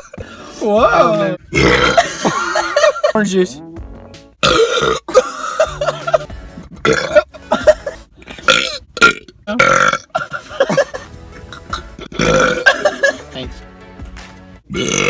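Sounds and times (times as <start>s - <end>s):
men burping loudly: 0.9s - 3.0s, 4.4s - 13.2s, 14.7s - 15.0s.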